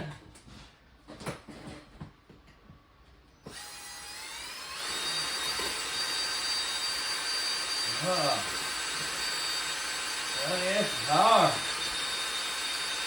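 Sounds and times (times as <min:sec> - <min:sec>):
electric drill boring into concrete: 0:03.5 - 0:13.0.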